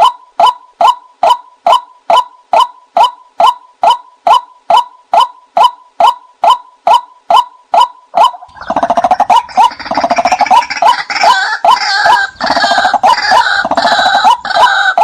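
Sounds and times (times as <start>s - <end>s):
waterhens calling kwak: 0.0s - 15.0s
fast gurgling bird chatter: 8.2s - 15.0s.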